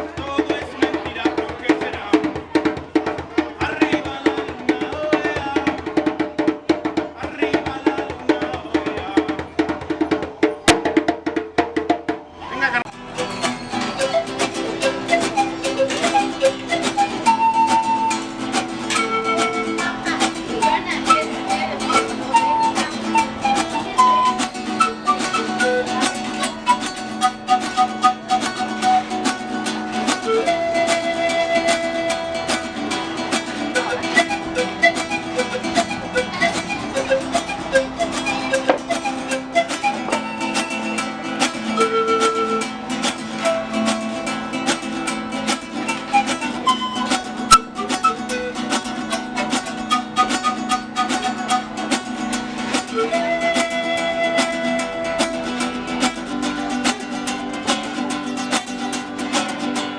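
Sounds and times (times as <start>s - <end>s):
acoustic guitar strumming: 0.0s - 12.1s, 12.9s - 59.9s
plucked guitar melody: 0.0s - 59.9s.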